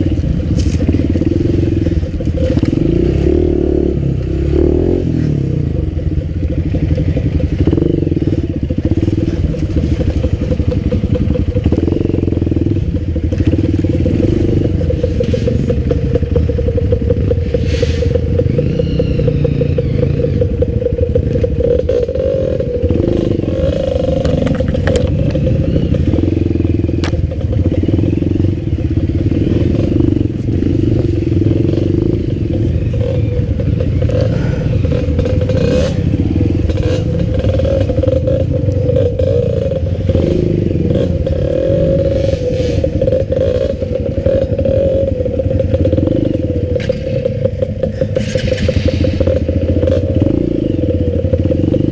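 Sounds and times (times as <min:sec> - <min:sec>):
off-road motorcycle engine: 0:00.0 - 0:51.9
clatter and knocks: 0:24.1 - 0:26.2, 0:45.6 - 0:50.0.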